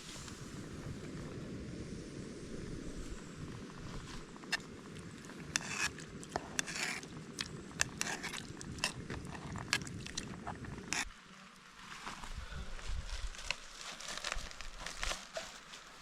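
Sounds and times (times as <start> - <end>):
steady low rumble: 0.0 - 11.2
sharp crackles and clicks: 4.3 - 11.7
scraping rustles: 11.8 - 16.0.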